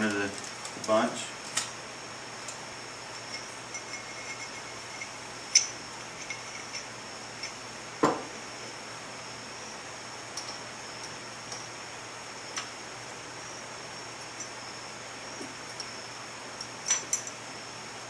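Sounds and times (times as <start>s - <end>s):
metal parts clicking and clinking: 3.2s - 7.6s, 16.6s - 17.4s.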